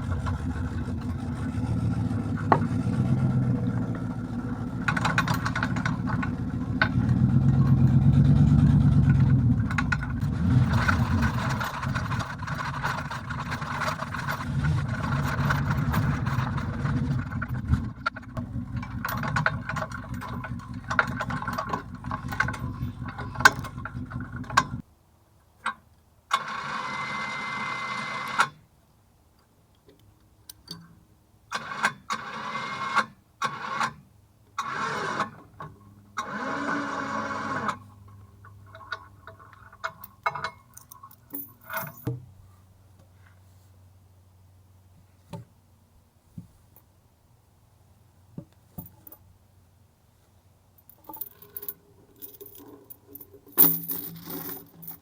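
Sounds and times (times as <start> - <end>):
truck engine running: 0.0 - 13.4, 14.0 - 24.8
rattles and knocks: 0.0 - 24.8, 50.8 - 55.0.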